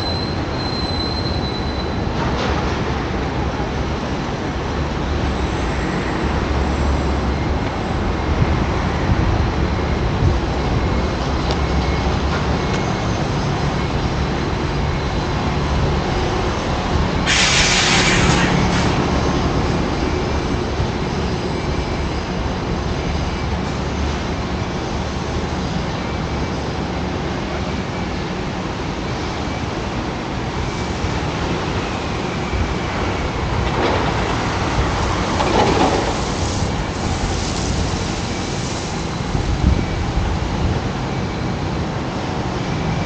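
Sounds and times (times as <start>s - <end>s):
train rumbling on tracks: 0.0s - 43.0s
loud hiss: 17.2s - 19.2s.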